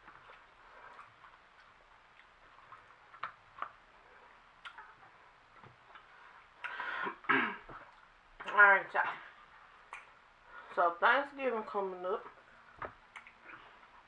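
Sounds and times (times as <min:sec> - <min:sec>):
eating clicks and smacks: 0:00.0 - 0:03.9, 0:04.6 - 0:06.8, 0:09.8 - 0:10.2, 0:12.8 - 0:13.6
person's voice: 0:08.4 - 0:09.3, 0:10.7 - 0:12.3.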